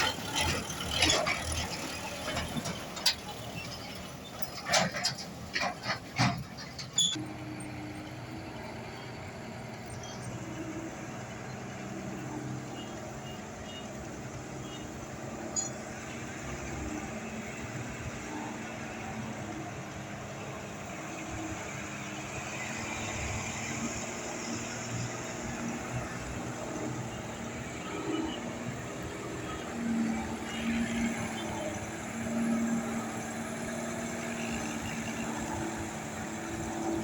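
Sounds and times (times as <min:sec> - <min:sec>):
diesel truck engine running: 0:00.0 - 0:12.6.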